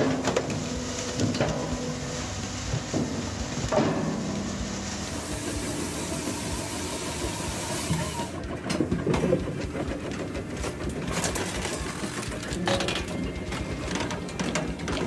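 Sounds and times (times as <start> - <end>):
heavy machinery rumbling: 0.0 - 15.0.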